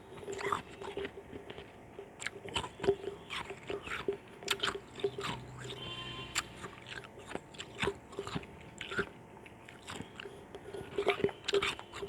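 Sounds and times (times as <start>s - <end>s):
chewing crunchy ice: 0.0s - 12.0s.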